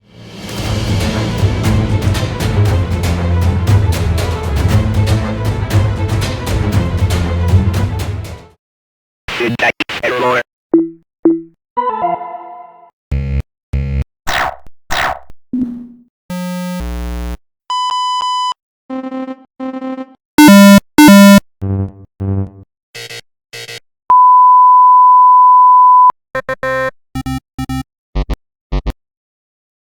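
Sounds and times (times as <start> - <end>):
computer error buzzes: 20.4 - 21.4
electronic beeps: 20.4 - 21.4
steady pure beep: 20.4 - 21.4, 24.1 - 26.1.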